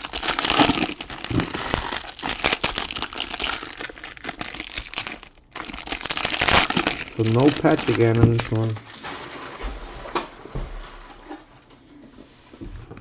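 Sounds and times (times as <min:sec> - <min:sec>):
plastic wrapping tearing: 0:00.0 - 0:09.6
plastic wrapping crinkling: 0:00.0 - 0:10.5.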